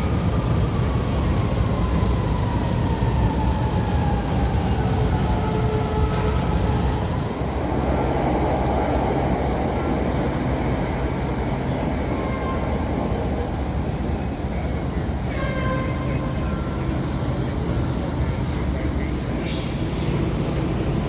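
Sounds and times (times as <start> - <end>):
train rumbling on elevated tracks: 0.0 - 21.0
high-pitched train squeal: 7.1 - 20.7.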